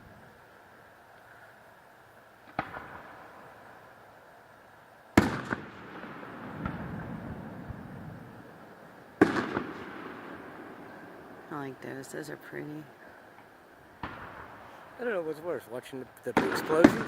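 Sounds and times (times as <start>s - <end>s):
fireworks rumble: 0.0s - 17.0s
fireworks bangs: 2.4s - 3.8s, 5.1s - 17.0s.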